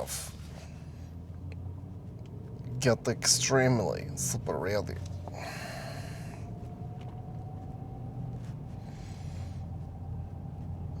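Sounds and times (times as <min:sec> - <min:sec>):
low background hum: 0:00.0 - 0:11.0
soft breaths: 0:05.2 - 0:06.8, 0:08.4 - 0:10.3.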